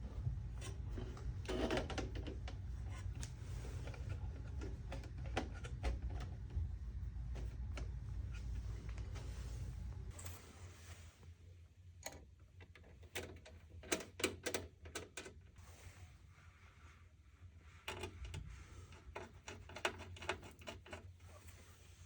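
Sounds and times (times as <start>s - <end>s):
low steady hum: 0.0s - 13.8s.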